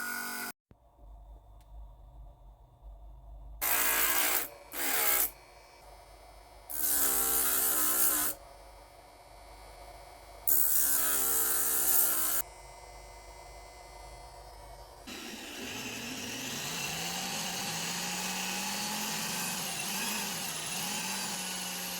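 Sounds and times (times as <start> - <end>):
power tool grinding metal: 0.0 - 0.5, 3.6 - 5.4, 6.7 - 8.4, 10.5 - 12.5, 15.0 - 21.9.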